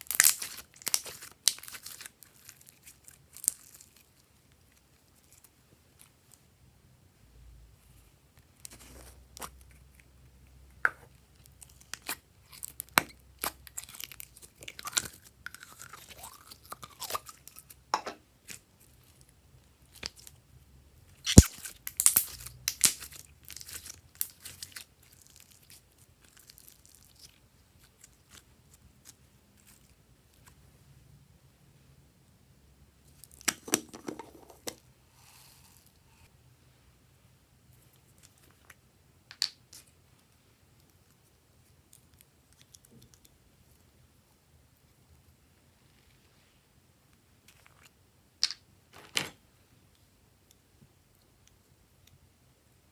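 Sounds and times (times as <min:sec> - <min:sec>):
slime squishing and popping: 0:00.0 - 0:02.1, 0:21.2 - 0:27.2.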